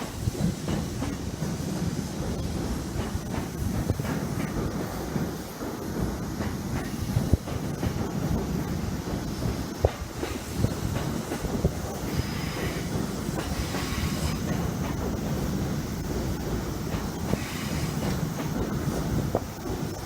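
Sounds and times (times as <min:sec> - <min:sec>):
train rumbling: 0:00.0 - 0:20.0
train wheel clicks and knocks: 0:00.0 - 0:20.0.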